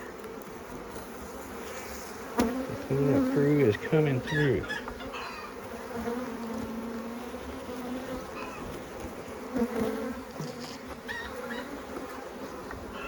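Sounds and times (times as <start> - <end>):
bees buzzing: 0.6 - 8.4.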